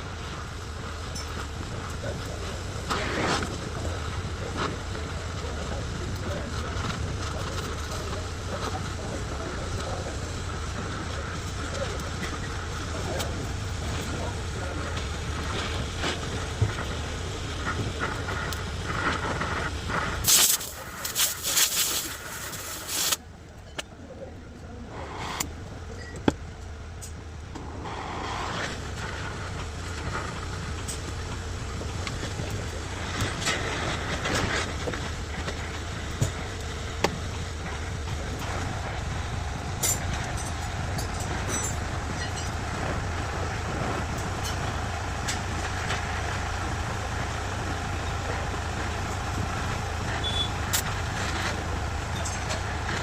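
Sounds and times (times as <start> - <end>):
loud hissing: 18.3 - 23.2
vehicle engine idling: 34.8 - 53.0.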